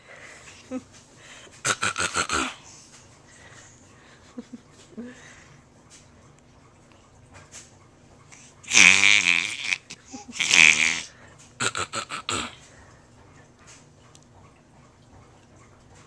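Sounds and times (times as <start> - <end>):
fake coughing: 1.6 - 2.6, 8.7 - 12.6.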